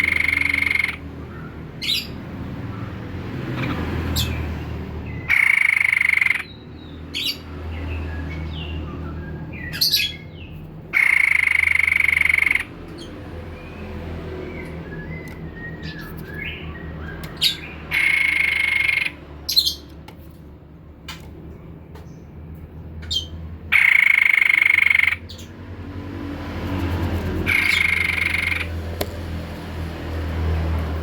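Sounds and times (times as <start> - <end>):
bird chirps: 0.0 - 2.9, 5.1 - 20.0, 23.0 - 25.6, 27.5 - 28.8.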